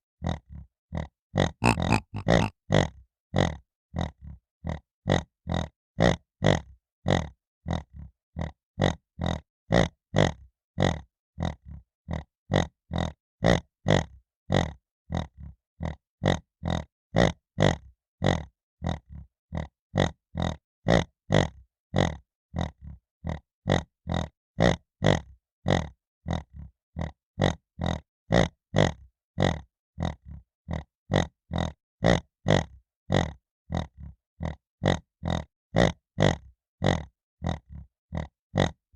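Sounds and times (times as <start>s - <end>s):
piglet grunting: 1.6s - 2.5s.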